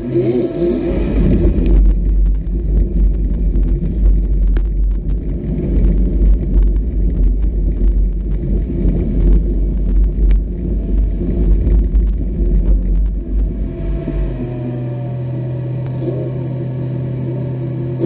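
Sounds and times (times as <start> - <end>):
off-road vehicle engine rumble: 0.0 - 18.0.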